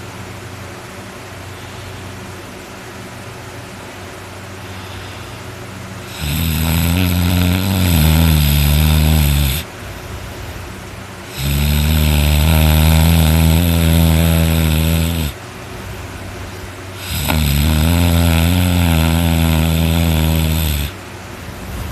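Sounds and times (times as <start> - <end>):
person snoring loudly: 6.0 - 9.7, 11.3 - 15.4, 17.0 - 21.0.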